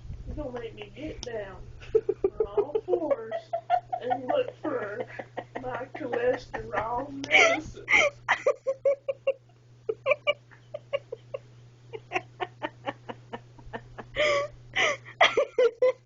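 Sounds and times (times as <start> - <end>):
low electrical hum: 0.0 - 16.0
person laughing: 1.8 - 11.4, 12.0 - 16.0.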